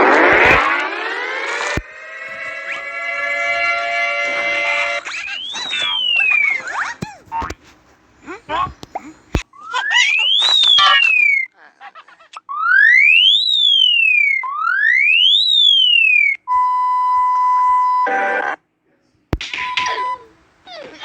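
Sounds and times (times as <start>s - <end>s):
burst of noise: 0.0s - 6.6s
rising and falling siren tone: 0.0s - 6.7s, 9.6s - 11.4s, 12.5s - 16.4s.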